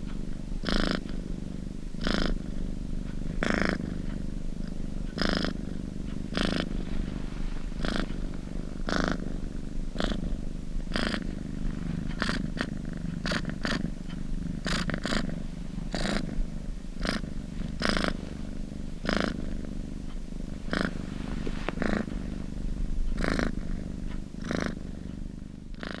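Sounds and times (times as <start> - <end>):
cat purring: 0.0 - 26.0.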